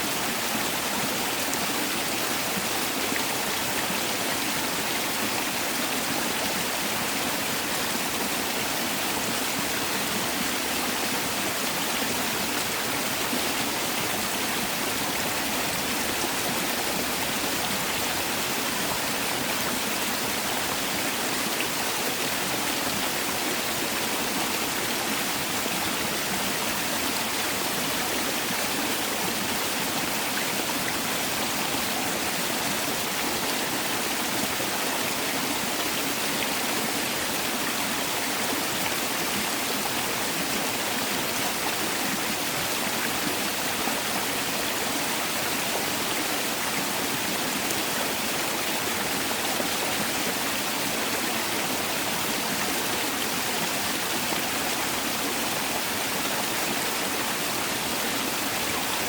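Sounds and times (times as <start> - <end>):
stream rushing over rocks: 0.0 - 59.0.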